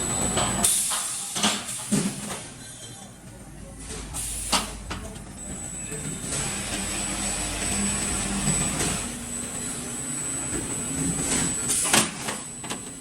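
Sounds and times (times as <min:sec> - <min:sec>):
machine rumble and hiss: 0:00.0 - 0:13.0.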